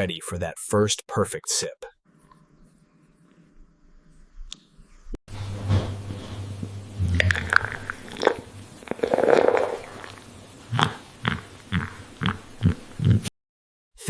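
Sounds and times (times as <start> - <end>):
person slurping coffee: 7.0 - 13.2.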